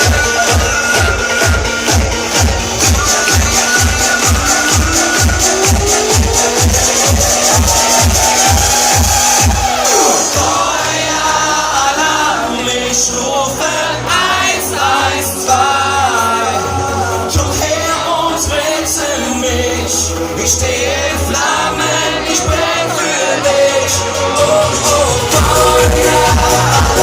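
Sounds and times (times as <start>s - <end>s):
thumping dance beat: 0.0s - 10.6s, 24.6s - 27.0s
pop singing over backing track: 0.0s - 27.0s
sustained bass notes: 0.0s - 27.0s.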